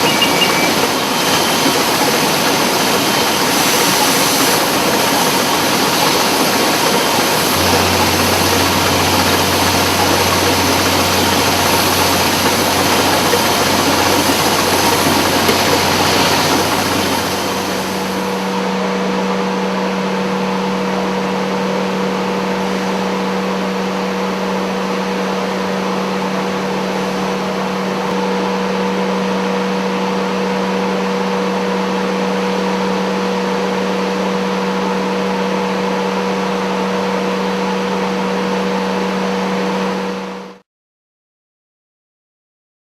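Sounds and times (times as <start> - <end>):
vacuum extraction system running: 0.0 - 40.6.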